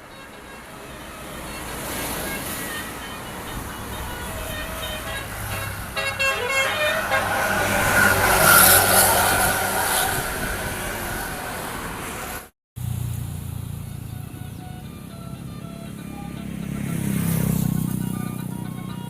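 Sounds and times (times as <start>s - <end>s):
bus musical horn: 0.0s - 12.4s, 13.7s - 19.0s
low engine hum: 0.0s - 19.0s
loud noise: 3.4s - 12.0s.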